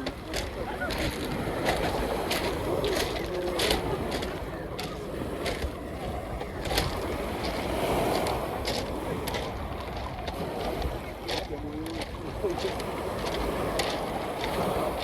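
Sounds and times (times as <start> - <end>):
wind and surf rumble: 0.0 - 15.0
sharp crunching clicks: 6.6 - 15.0.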